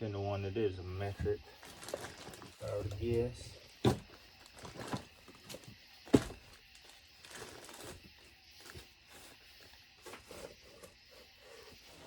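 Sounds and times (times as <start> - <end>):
faint rustling: 1.0 - 12.0.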